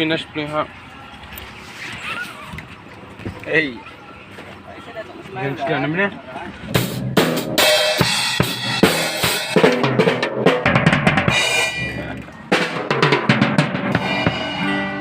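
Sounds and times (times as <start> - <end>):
drum kit playing: 6.7 - 15.0
music through pa speakers: 12.5 - 15.0.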